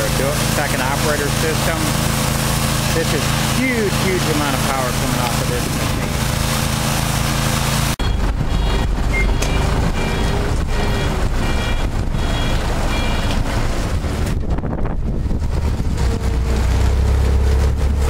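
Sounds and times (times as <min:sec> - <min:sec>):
engine rumble: 0:00.0 - 0:18.0
short electronic beeps: 0:08.0 - 0:13.4.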